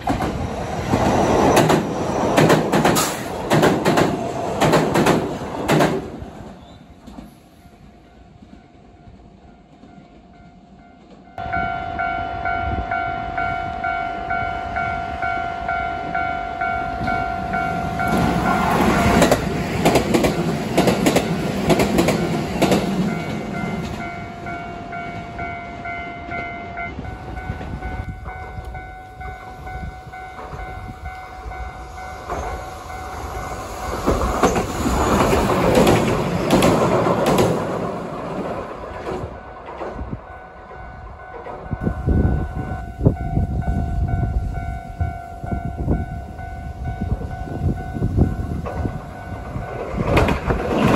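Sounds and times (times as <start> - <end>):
train wheels clicking over rail joints: 0.0 - 7.6, 18.0 - 24.1, 32.2 - 41.8, 48.3 - 50.9.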